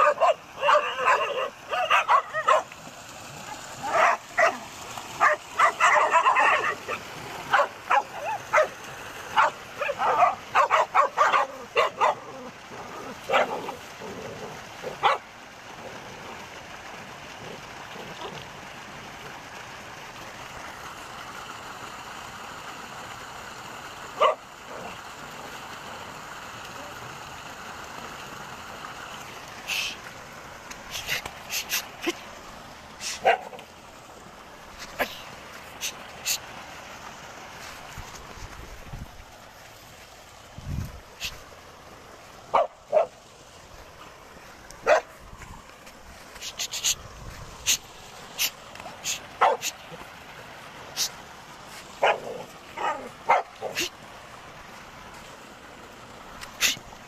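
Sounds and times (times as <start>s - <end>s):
dog barking and yelping: 0.0s - 2.7s, 3.8s - 4.6s, 5.2s - 15.3s, 24.2s - 24.8s, 33.1s - 33.6s, 42.5s - 43.1s, 44.8s - 45.2s, 49.4s - 49.7s, 52.0s - 53.9s
background hiss: 0.0s - 57.0s.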